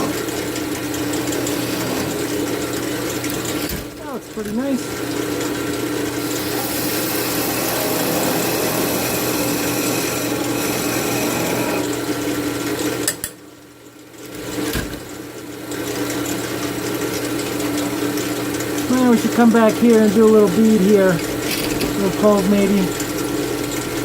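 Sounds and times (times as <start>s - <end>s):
lathe tool scraping wood: 0.0s - 3.9s, 4.8s - 12.1s
lathe motor hum: 0.0s - 13.0s, 16.4s - 24.0s.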